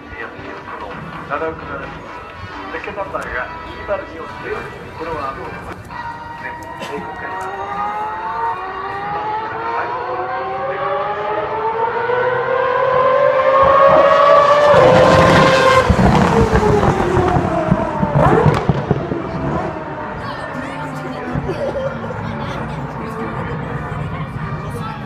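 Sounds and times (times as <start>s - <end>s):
racing engine passing by: 7.4s - 25.0s.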